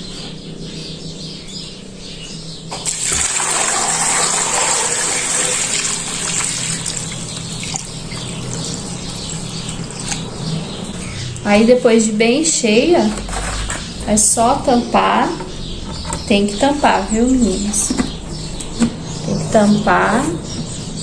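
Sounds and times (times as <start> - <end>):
water pouring into a tub: 2.7 - 9.0.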